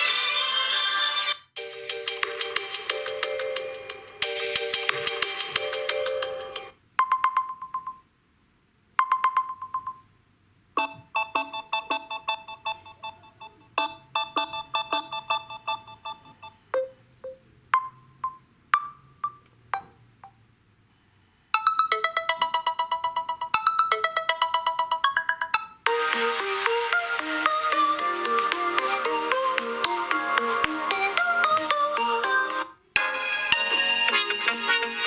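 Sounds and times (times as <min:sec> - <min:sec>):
electronic ringtone melodies: 0:01.6 - 0:08.1, 0:09.0 - 0:10.1, 0:10.8 - 0:20.4, 0:21.6 - 0:35.0.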